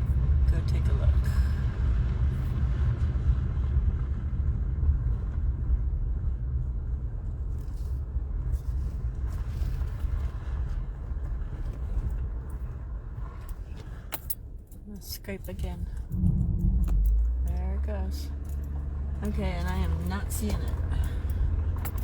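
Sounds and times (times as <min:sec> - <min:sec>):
road and engine rumble: 0:00.0 - 0:22.0.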